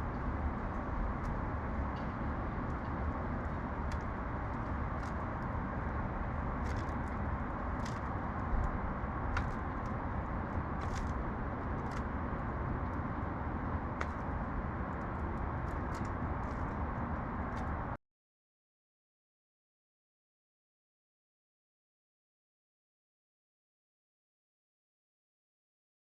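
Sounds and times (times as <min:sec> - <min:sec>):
distant traffic hum: 0:00.0 - 0:18.0.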